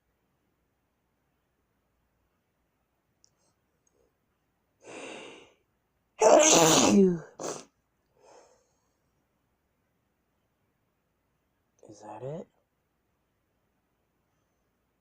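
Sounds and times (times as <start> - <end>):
intake of breath: 4.8 - 5.6
person sneezing: 6.2 - 7.7.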